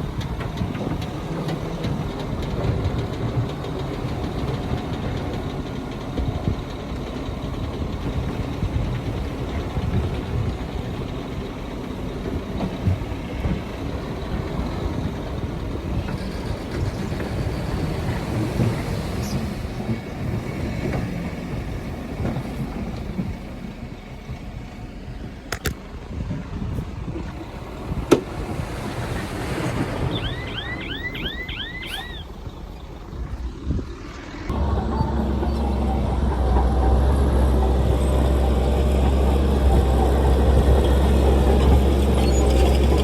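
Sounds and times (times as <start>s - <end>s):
heavy diesel machinery rumbling: 0.0s - 43.0s
sharp clicks or knocks: 25.5s - 25.8s.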